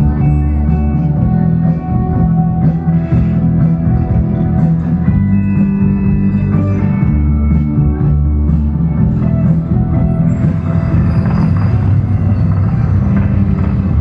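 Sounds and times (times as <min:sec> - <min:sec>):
rock music over loudspeakers: 0:00.0 - 0:14.0.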